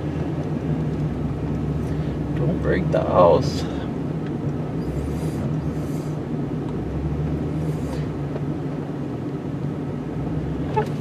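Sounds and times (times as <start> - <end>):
truck engine running at low revs: 0.0 - 11.0.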